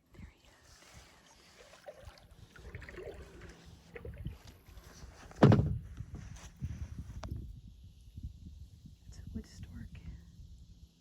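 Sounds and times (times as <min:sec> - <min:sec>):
paddle strokes in water: 0:00.7 - 0:05.4.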